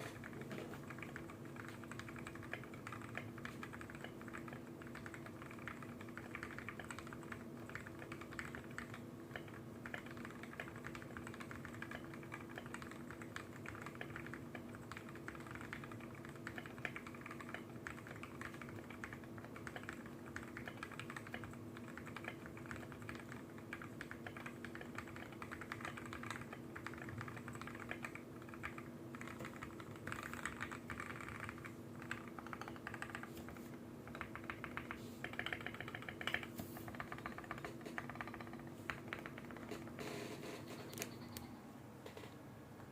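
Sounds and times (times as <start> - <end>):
mechanical keyboard typing: 0.0 - 41.5.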